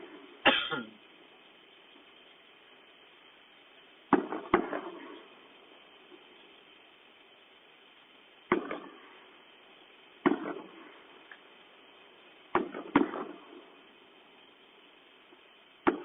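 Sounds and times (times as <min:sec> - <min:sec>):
firework bangs with echoes: 0:04.1 - 0:05.3, 0:08.5 - 0:09.1, 0:10.2 - 0:11.0, 0:12.5 - 0:13.9, 0:15.8 - 0:16.0.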